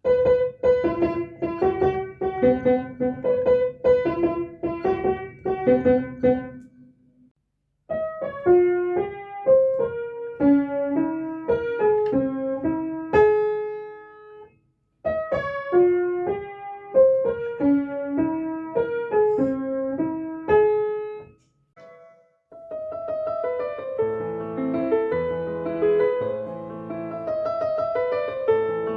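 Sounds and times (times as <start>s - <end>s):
ringtone with fuller chords: 21.8s - 22.4s
piano ringtone melody: 21.8s - 28.9s.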